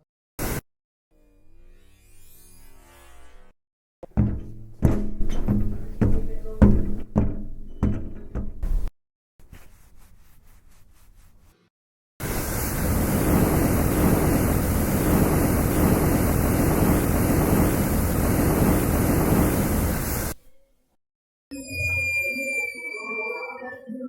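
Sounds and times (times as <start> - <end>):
loud steady rushing noise: 12.2 - 20.4.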